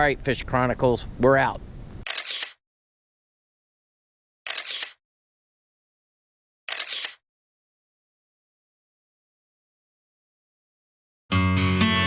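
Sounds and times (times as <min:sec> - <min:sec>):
short hiss-like noise bursts: 0:02.0 - 0:02.6.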